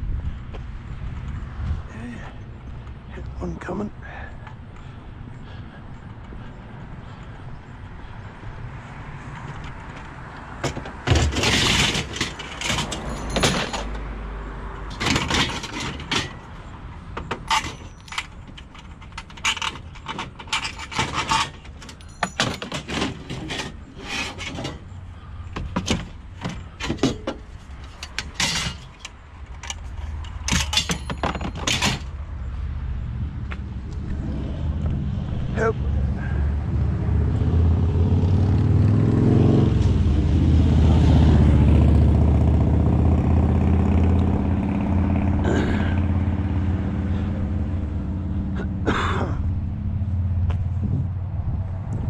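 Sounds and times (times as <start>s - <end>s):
scrap metal clanking: 10.6s - 14.0s, 14.9s - 32.2s.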